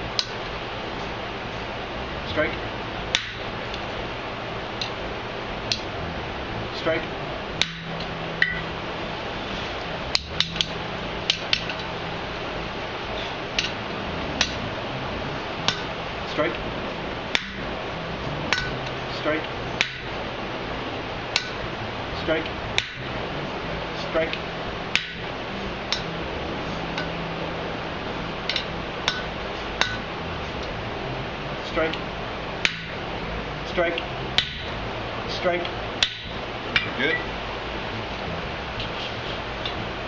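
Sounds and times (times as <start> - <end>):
steady background noise: 0.0 - 40.0
steady low hum: 0.0 - 40.0
hammer striking hot steel on anvil: 3.1 - 3.5, 7.6 - 8.6, 10.1 - 11.9, 13.6 - 13.8, 14.4 - 14.6, 15.7 - 15.9, 17.3 - 17.7, 18.5 - 18.9, 19.8 - 20.1, 21.3 - 21.6, 22.8 - 23.1, 24.9 - 25.3, 25.9 - 26.1, 27.0 - 27.2, 28.5 - 30.1, 32.6 - 33.0, 34.4 - 34.8, 36.0 - 37.2.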